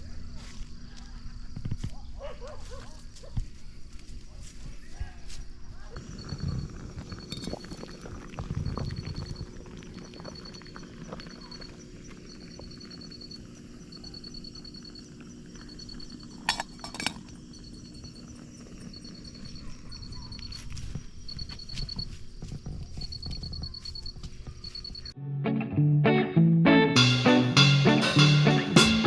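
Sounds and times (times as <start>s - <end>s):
high-pitched pulsed trill: 27.0s - 29.0s.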